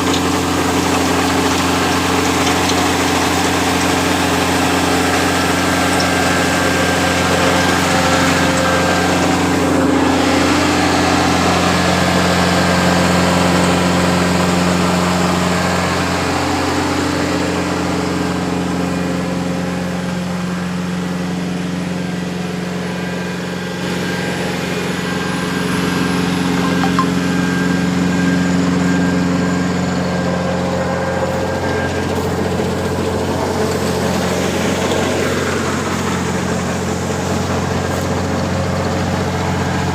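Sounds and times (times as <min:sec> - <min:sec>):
harvester engine running: 0:00.0 - 0:39.9.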